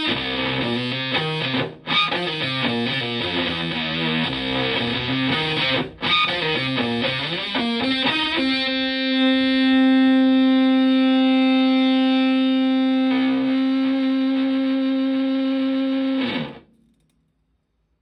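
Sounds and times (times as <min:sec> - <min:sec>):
fuzzed electric guitar notes: 0:00.0 - 0:16.7.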